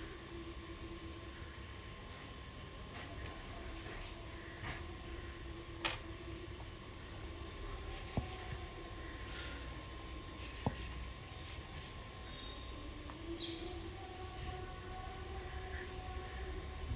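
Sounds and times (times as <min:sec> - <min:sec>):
steady hum: 0:00.0 - 0:16.9
light rubbing: 0:07.9 - 0:08.6, 0:10.4 - 0:11.8.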